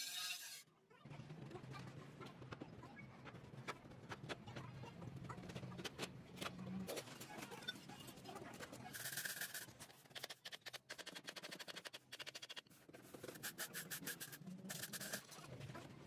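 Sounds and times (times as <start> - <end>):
quick scraping strokes: 12.4 - 15.3.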